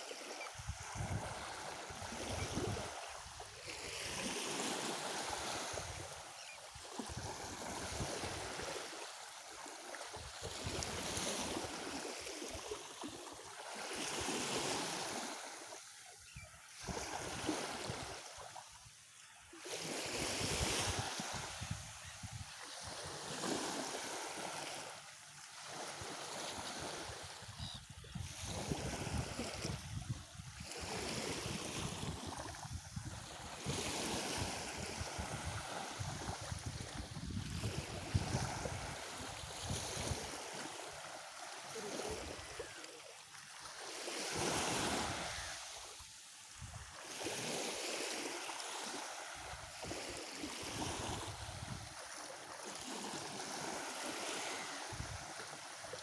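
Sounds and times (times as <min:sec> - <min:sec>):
waves breaking on shore: 0:00.0 - 0:56.0.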